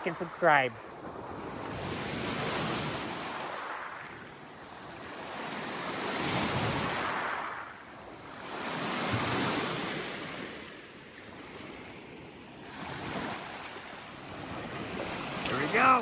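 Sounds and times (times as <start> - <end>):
waves washing onto shore: 0.0 - 16.0.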